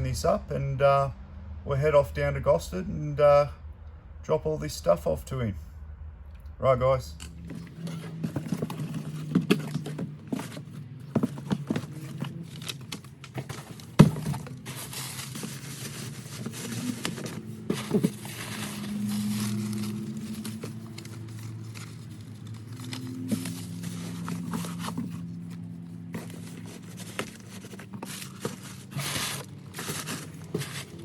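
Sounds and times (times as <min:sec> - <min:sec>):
rustling: 0:07.2 - 0:31.0.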